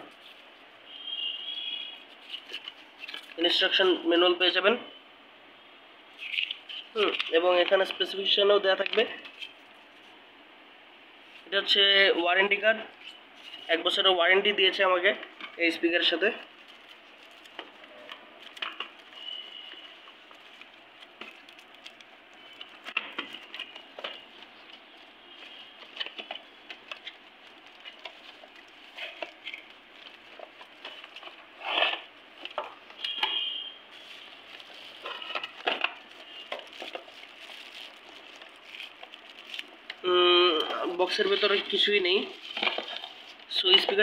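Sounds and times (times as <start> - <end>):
packing crinkling rustles: 2.0 - 3.4, 15.4 - 44.0.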